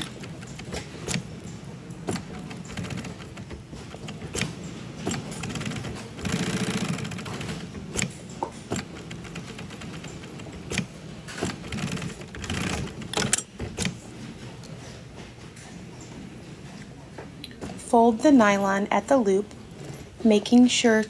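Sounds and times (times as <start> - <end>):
sewing machine stitching: 0.0 - 14.0.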